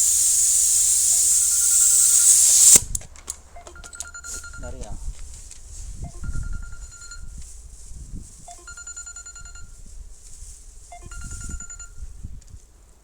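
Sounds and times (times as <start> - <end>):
phone ringtone melody: 3.6 - 5.0, 6.0 - 7.4, 8.5 - 9.8, 10.9 - 12.1.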